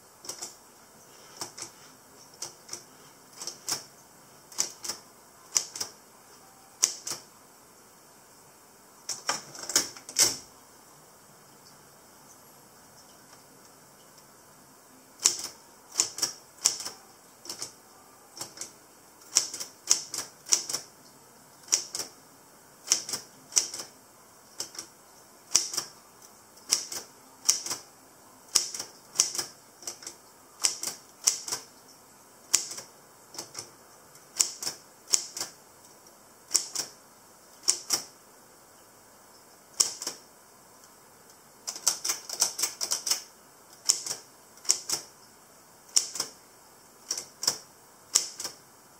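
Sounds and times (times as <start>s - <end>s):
typewriter keys clacking: 0.2s - 0.6s, 3.4s - 3.9s, 4.5s - 5.9s, 6.8s - 7.2s, 9.1s - 10.4s, 15.2s - 17.8s, 18.4s - 18.7s, 19.3s - 20.8s, 21.6s - 22.1s, 22.8s - 23.9s, 25.5s - 25.9s, 26.7s - 27.8s, 28.5s - 31.6s, 32.5s - 33.7s, 34.4s - 35.5s, 36.5s - 36.9s, 37.6s - 38.1s, 39.8s - 40.2s, 41.7s - 45.1s, 45.9s - 46.3s, 47.1s - 48.6s.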